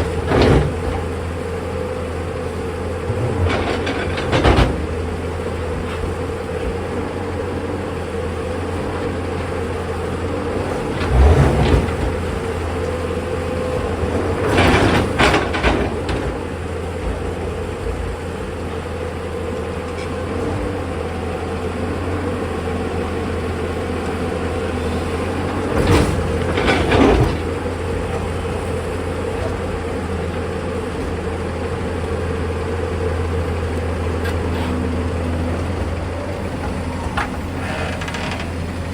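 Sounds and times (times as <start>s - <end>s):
excavator diesel engine droning: 0.0s - 38.9s.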